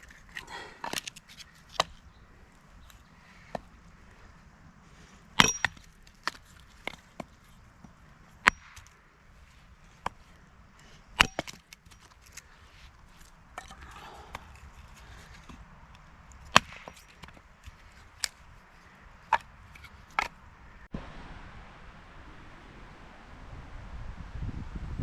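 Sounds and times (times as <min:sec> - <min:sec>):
firewood chopping knocks: 0:05.4 - 0:07.0, 0:11.2 - 0:11.6, 0:16.5 - 0:17.4.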